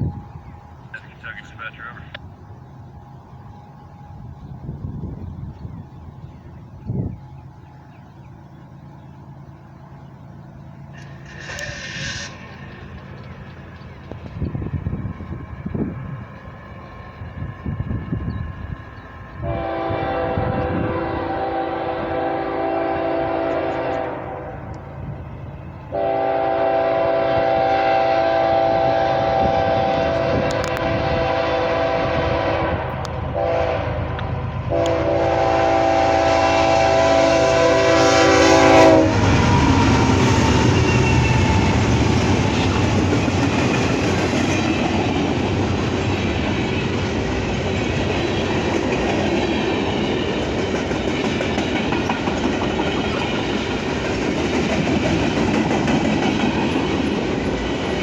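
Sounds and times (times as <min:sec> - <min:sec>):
train passing with rumble: 0:00.0 - 0:58.0
wheels clacking over rail joints: 0:10.9 - 0:14.8, 0:39.2 - 0:58.0
locomotive air horn blasts: 0:19.4 - 0:24.7, 0:25.9 - 0:41.6.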